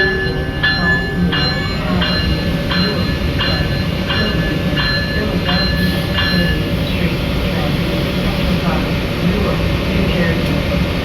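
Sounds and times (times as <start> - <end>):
locomotive bell ringing: 0.0 - 8.5
locomotive rumble: 0.0 - 11.0.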